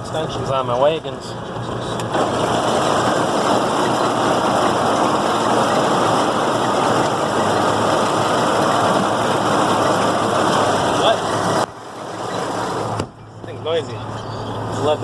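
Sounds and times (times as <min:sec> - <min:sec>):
tractor engine: 0:00.0 - 0:15.0
corn picker mechanical clatter: 0:01.6 - 0:13.0.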